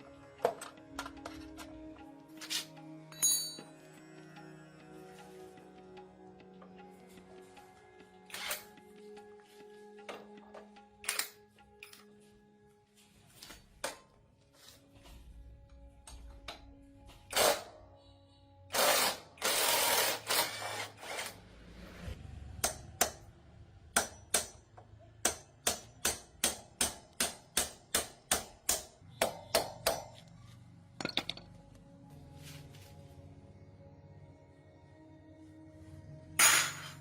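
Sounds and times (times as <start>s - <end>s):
background music: 0.0s - 37.0s
loud noisy tool bursts: 18.7s - 21.4s.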